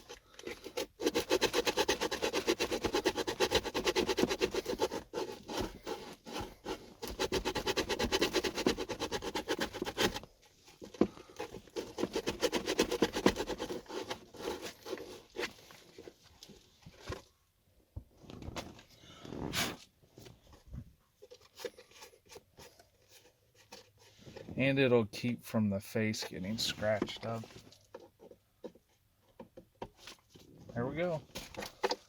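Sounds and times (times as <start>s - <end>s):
sandpaper rubbing: 0.0s - 10.2s, 11.4s - 15.5s.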